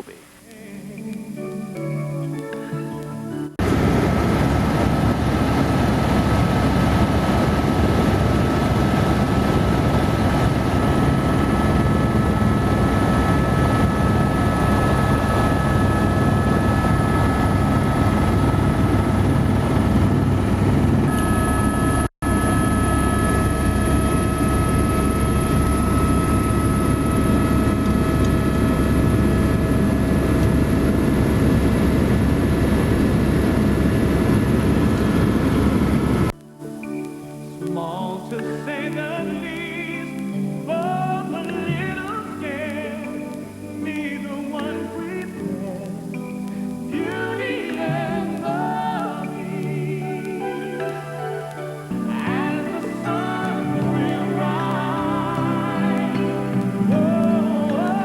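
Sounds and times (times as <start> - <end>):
helicopter rotor and turbine drone: 3.6 - 36.3
whining tones: 3.6 - 36.3.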